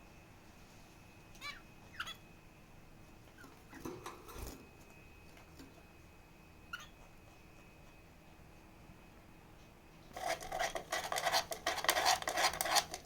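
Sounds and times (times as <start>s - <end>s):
faint steady high tone: 0.0s - 10.0s
parrot chirping: 6.7s - 7.0s.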